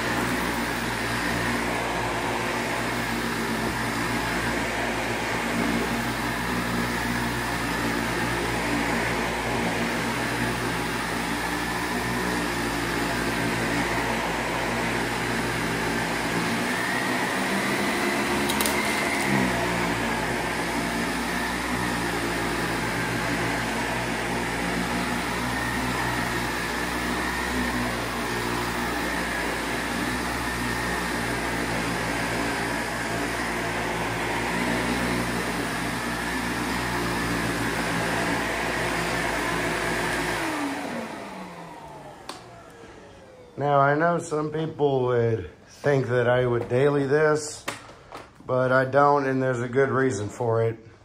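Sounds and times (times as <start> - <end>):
vacuum cleaner whining: 0.0 - 51.0.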